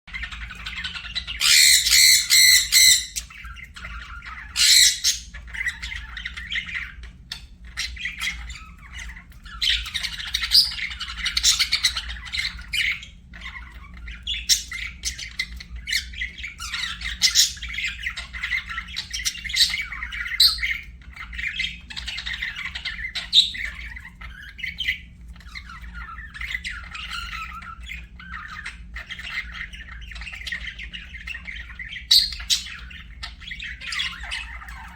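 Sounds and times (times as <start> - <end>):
budgerigars chirping: 0.1 - 34.9
harsh squawks: 1.3 - 3.4, 4.2 - 6.0.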